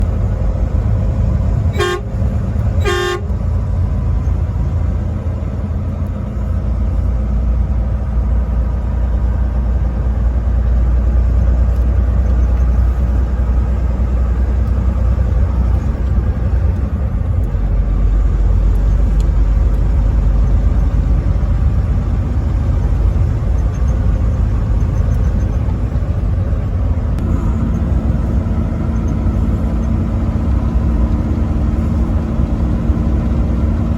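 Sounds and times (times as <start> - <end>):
low vehicle rumble: 0.0 - 33.9
truck horn blasts: 1.7 - 3.6.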